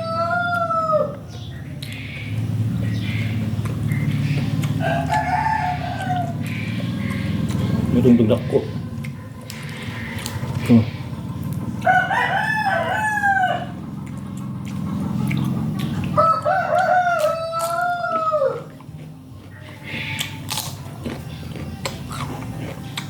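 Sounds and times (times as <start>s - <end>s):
rooster crowing: 0.0s - 1.2s, 4.8s - 6.9s, 11.8s - 13.9s, 16.1s - 18.8s
steady low hum: 0.6s - 23.0s.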